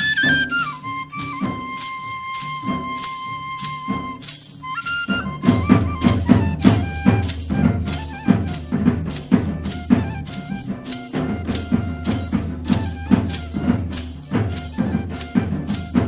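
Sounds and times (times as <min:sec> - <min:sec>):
background music melody: 0:00.0 - 0:16.0
rattling tambourine-like percussion: 0:00.0 - 0:16.0
deep drum and bass line: 0:05.5 - 0:16.0.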